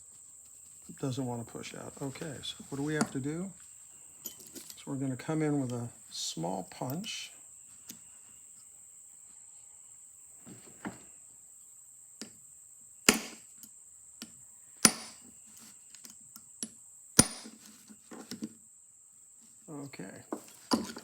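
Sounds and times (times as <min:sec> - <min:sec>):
metal punch strikes: 0:14.9 - 0:15.2, 0:17.2 - 0:17.5.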